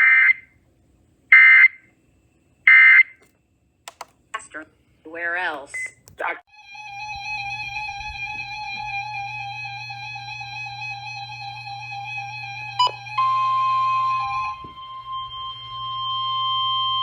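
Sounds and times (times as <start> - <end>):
wavering musical tone: 6.5 - 17.0
steady alarm tone: 6.6 - 17.0.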